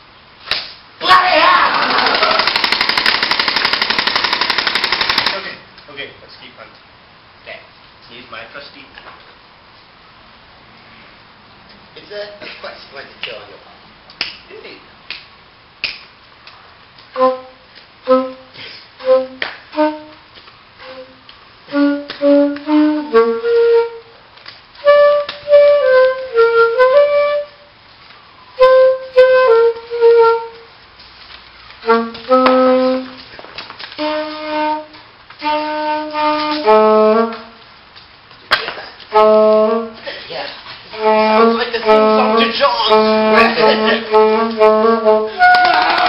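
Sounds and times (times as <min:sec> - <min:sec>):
flute-like woodwind melody: 0:17.1 - 0:27.8, 0:28.5 - 0:30.7, 0:31.8 - 0:33.3, 0:34.0 - 0:37.6, 0:39.1 - 0:40.0, 0:40.9 - 0:46.0.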